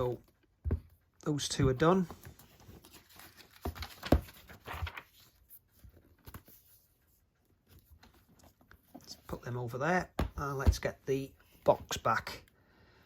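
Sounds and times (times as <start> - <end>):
paper envelopes rustling: 1.3 - 9.1.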